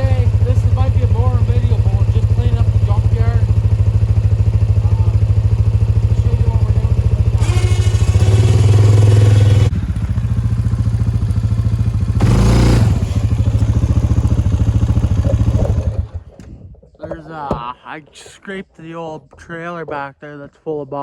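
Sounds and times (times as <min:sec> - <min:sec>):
atv engine running and revving: 0:00.0 - 0:16.4.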